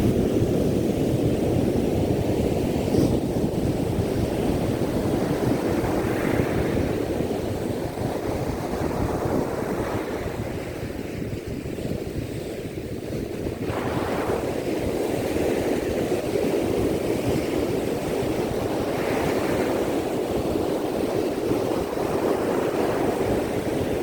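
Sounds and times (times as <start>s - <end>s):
surf breaking on beach: 12.8s - 24.0s.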